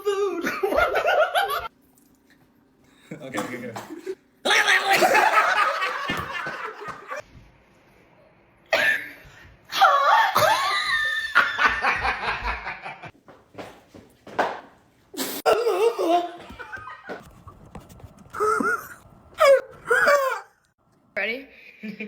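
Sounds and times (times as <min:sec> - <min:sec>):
people laughing: 0:04.5 - 0:07.2, 0:10.8 - 0:13.1.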